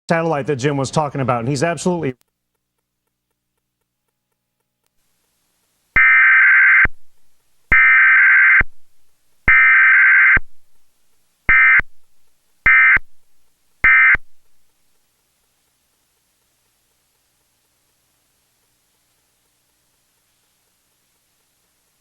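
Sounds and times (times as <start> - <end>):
alert data tone bursts: 6.0 - 7.1, 7.7 - 8.9, 9.5 - 10.6, 11.5 - 12.0, 12.7 - 13.2, 13.8 - 14.4.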